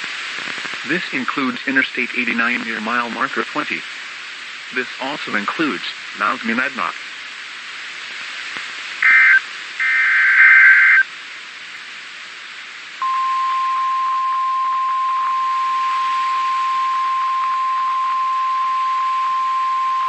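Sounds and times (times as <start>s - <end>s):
radio hiss: 0.0s - 20.0s
buzzy digital data bursts: 9.0s - 11.0s
steady warning alarm tone: 9.0s - 11.0s.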